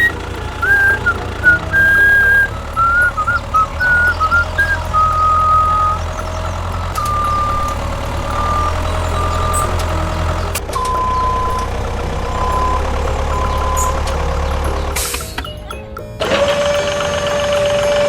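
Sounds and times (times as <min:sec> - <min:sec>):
reversing beeper beeping: 0:00.0 - 0:14.2
deep engine rumble: 0:00.0 - 0:15.7.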